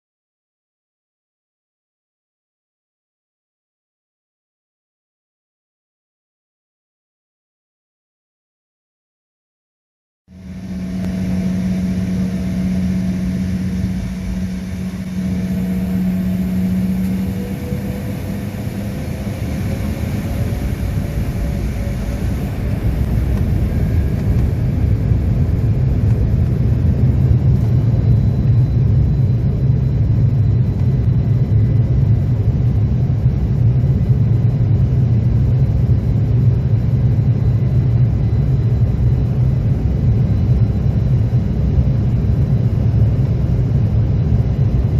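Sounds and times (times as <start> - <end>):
airliner engines humming: 10.3 - 44.9
deep rumble of take-off: 10.3 - 44.9.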